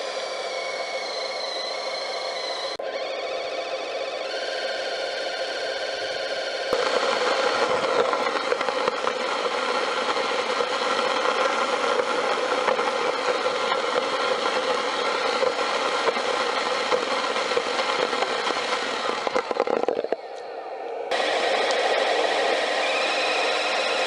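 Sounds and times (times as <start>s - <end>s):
model truck motor hum: 0.0s - 24.0s
faint whine: 5.0s - 24.0s.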